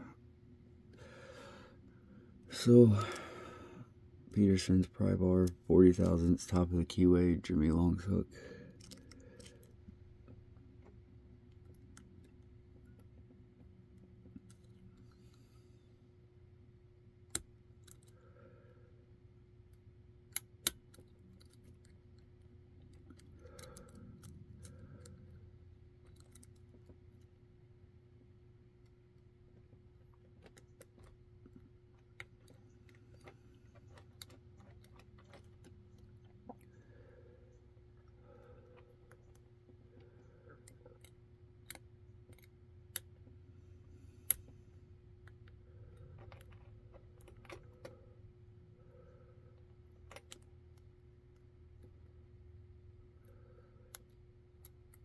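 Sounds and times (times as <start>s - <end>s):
lock pick clicking and scratching: 8.8s - 9.8s, 17.3s - 18.2s, 20.2s - 27.3s, 28.8s - 36.8s, 37.9s - 43.2s, 45.2s - 48.0s, 49.5s - 52.0s, 53.9s - 55.0s
small metallic lock clicks: 50.0s - 50.5s.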